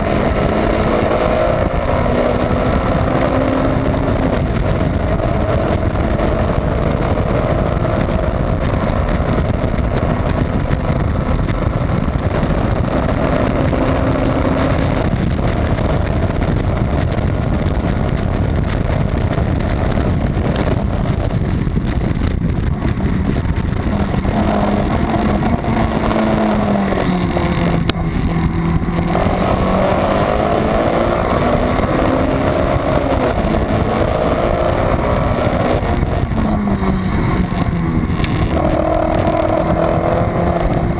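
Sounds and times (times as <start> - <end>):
car engine running hard: 0.0 - 40.9
road and wind noise: 0.0 - 40.9.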